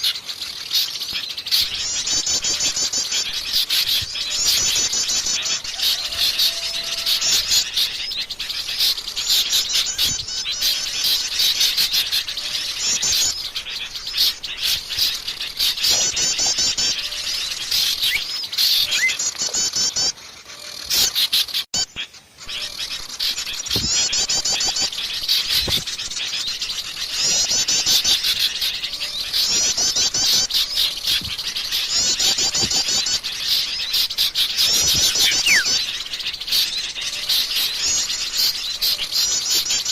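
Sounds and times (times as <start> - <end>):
birds singing with high trills: 0.0 - 39.9.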